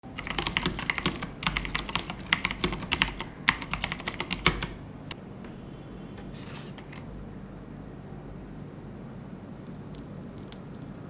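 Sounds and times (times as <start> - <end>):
mechanical keyboard key clacks: 0.1 - 4.8.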